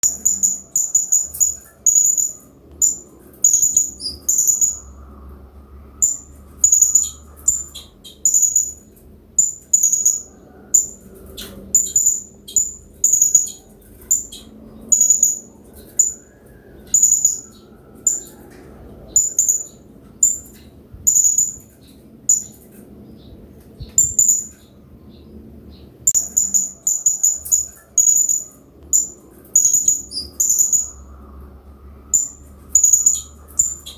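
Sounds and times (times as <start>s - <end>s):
parrot high-pitched chirps: 0.0s - 5.0s, 6.0s - 11.0s, 11.8s - 16.2s, 26.1s - 31.0s.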